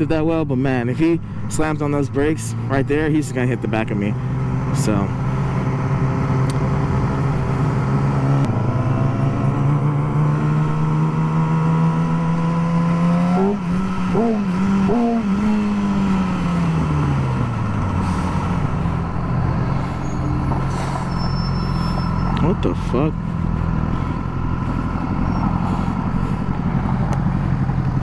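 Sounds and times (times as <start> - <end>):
motorcycle engine accelerating: 1.5 - 28.0.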